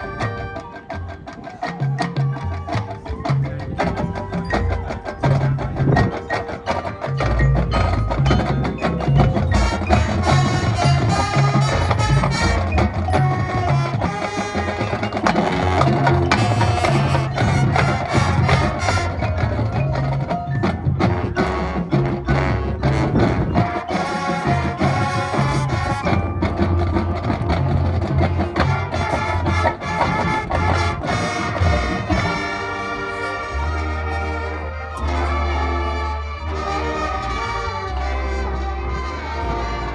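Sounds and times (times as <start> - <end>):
marching band playing: 0.0 - 39.9
struck percussion notes: 0.0 - 39.9
low bass line: 26.4 - 39.9.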